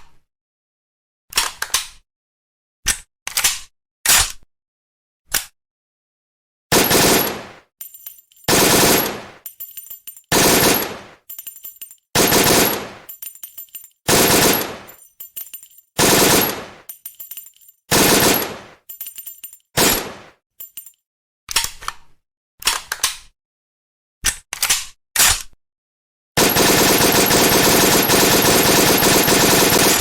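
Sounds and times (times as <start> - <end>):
rifle shots: 6.7 - 7.6, 8.5 - 9.4, 10.3 - 11.2, 12.2 - 13.1, 14.1 - 15.0, 16.0 - 16.8, 17.9 - 18.8, 19.8 - 20.3, 26.4 - 30.0
metallic clicks: 7.8 - 21.0.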